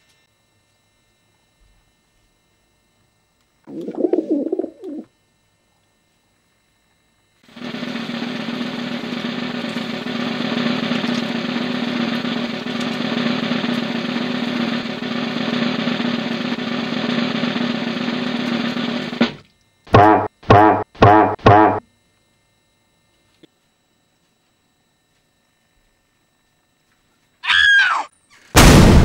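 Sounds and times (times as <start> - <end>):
drum roll: 7.6 - 21.8
loud low buzzing note: 19.9 - 21.9, 28.6 - 29.0.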